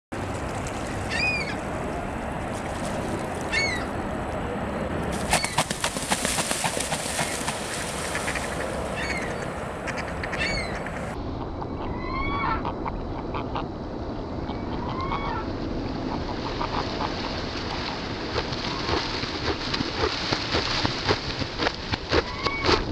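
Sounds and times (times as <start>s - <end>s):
steady background rush: 0.2s - 22.0s
waterfowl honking: 1.0s - 1.7s, 3.2s - 4.0s, 6.7s - 11.2s.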